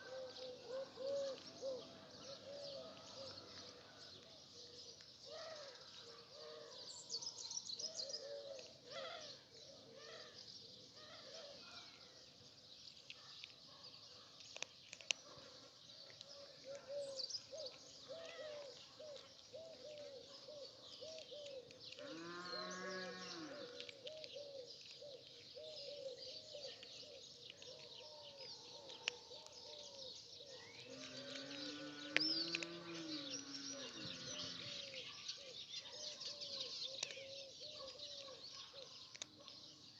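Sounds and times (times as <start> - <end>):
birds chirping and twittering: 0.0 - 39.9.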